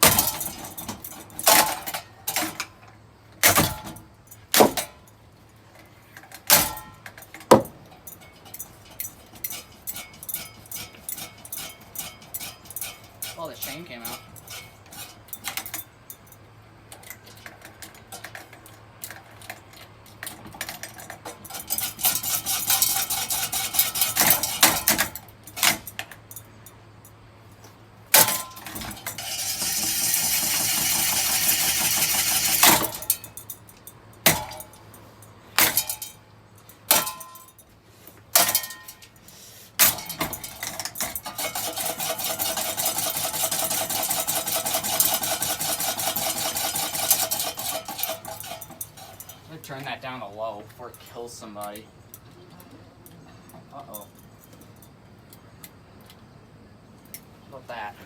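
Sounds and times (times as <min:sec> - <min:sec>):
ceiling fan rattling and scraping: 0:00.0 - 0:51.7
sharp metal clanks: 0:06.4 - 0:16.4, 0:28.1 - 0:37.7, 0:38.3 - 0:49.5.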